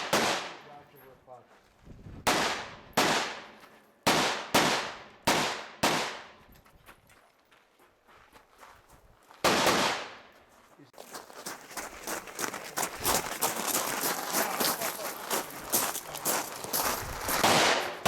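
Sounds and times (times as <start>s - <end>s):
rifle gunshots with echo: 0.0s - 0.7s, 2.3s - 6.4s, 9.4s - 10.3s, 17.4s - 18.0s.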